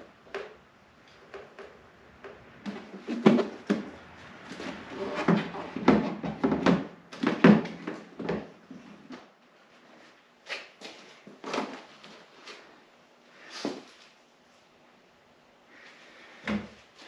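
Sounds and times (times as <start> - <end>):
knocks and clatter of parts: 4.6 - 8.6.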